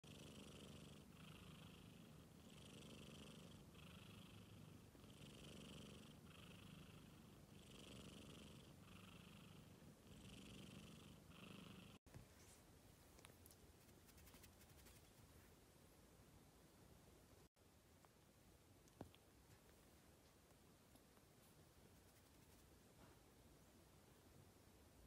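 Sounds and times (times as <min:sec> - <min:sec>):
cat purring: 0:00.0 - 0:12.1.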